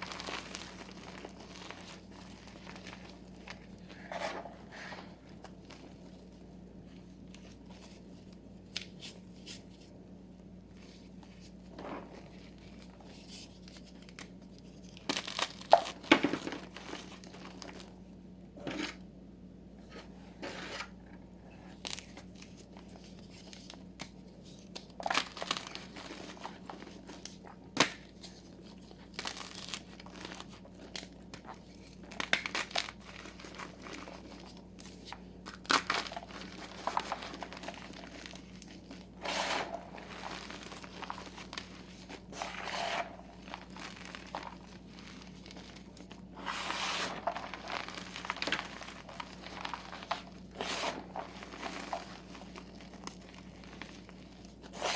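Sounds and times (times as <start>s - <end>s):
chalk crushed and crumbled by hand: 0.0s - 6.4s, 21.6s - 54.9s.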